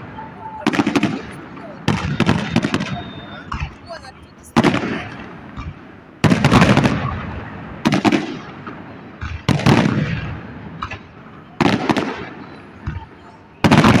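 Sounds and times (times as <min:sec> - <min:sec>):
faint firework pops: 0:04.6 - 0:14.0.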